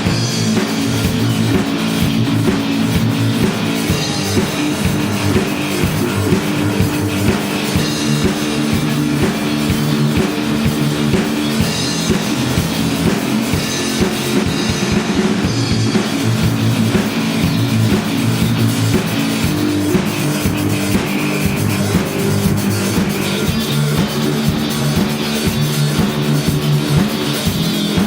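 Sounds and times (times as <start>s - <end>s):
drum kit beat: 0.0s - 28.0s
live rock band playing: 0.0s - 28.0s.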